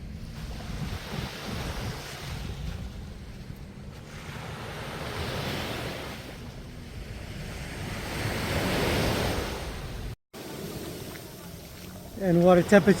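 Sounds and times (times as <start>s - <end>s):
wind buffeting microphone: 0.0s - 10.2s
waves washing onto sandy beach: 0.0s - 13.0s.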